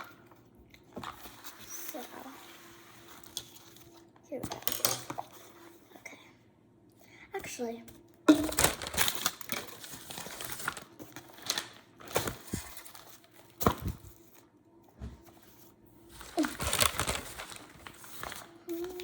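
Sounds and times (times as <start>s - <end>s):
foil wrapper crinkling and tearing: 8.3s - 14.0s, 16.1s - 19.0s.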